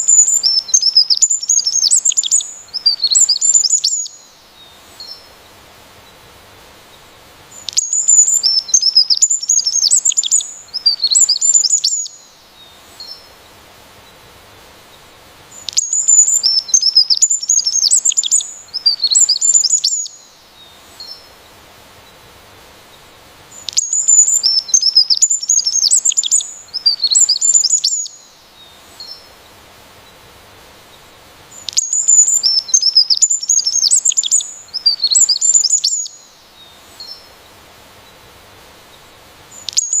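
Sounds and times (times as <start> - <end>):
songbird chirps and trills: 0.0 - 6.3, 6.9 - 14.3, 14.9 - 22.2, 22.9 - 40.0
faint steady hiss: 0.0 - 40.0.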